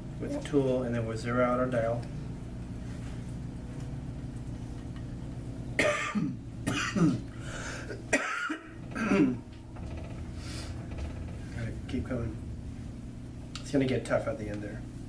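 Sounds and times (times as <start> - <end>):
steady low hum: 0.0 - 15.0
person coughing: 5.8 - 7.2, 7.8 - 9.4.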